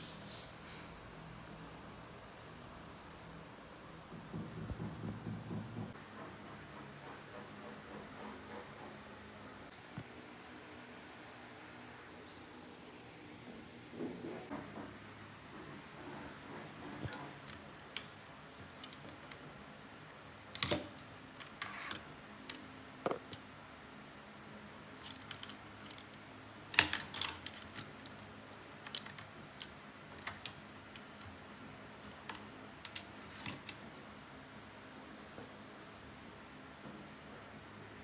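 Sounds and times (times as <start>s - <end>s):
hard objects clicking and tapping: 16.8s - 19.7s, 20.4s - 23.5s, 24.9s - 34.0s.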